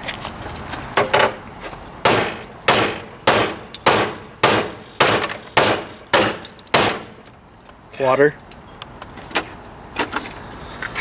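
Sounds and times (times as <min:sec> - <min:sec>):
hammer striking car sheet metal: 0:02.0 - 0:07.2.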